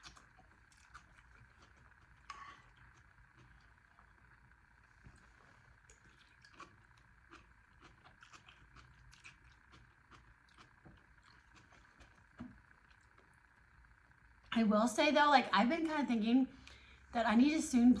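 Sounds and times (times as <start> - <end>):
quiet eating clicks: 0.0 - 4.4, 5.1 - 13.6.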